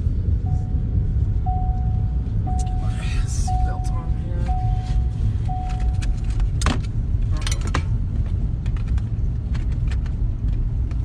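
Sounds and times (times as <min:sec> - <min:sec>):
car engine and road rumble: 0:00.0 - 0:11.0
warning tone: 0:00.4 - 0:06.5.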